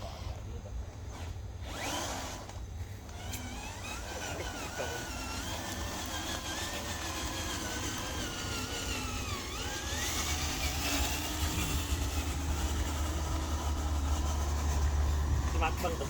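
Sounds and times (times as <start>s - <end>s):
electric motor whining: 0.0s - 16.0s.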